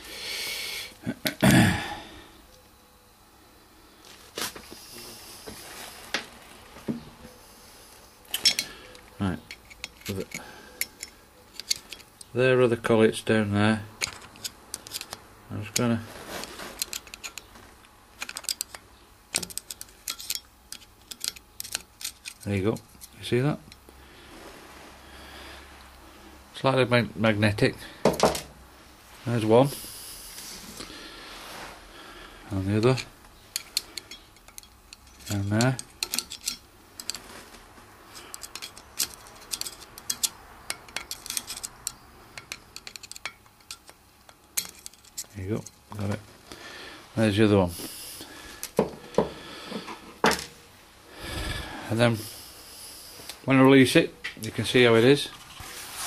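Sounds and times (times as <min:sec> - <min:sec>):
screwdriver clicking on metal: 0:08.3 - 0:12.3, 0:14.0 - 0:15.9, 0:16.8 - 0:17.5, 0:18.2 - 0:23.2, 0:32.8 - 0:37.2, 0:38.2 - 0:45.8
screwdriver tip clicking on metal: 0:33.5 - 0:37.2, 0:38.3 - 0:45.7.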